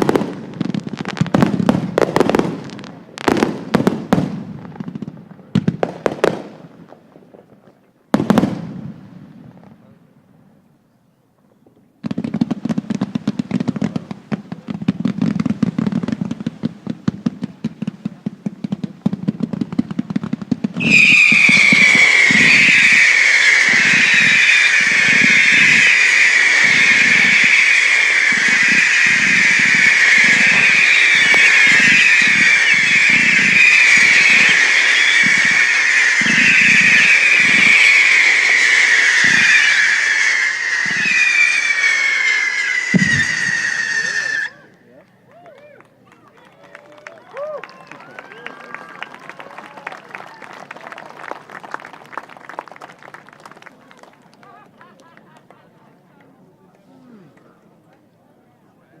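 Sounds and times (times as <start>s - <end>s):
fireworks crackling: 0.0s - 10.0s, 12.0s - 44.6s, 46.8s - 56.3s
low firework thuds: 11.6s - 41.2s, 42.9s - 44.1s
shrill firework whistle: 20.8s - 44.8s, 47.3s - 51.0s.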